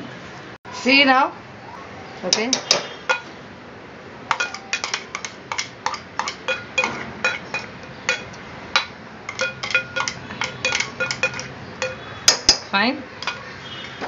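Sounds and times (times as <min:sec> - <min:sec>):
metal spoon clinking against pot: 0:04.3 - 0:14.0.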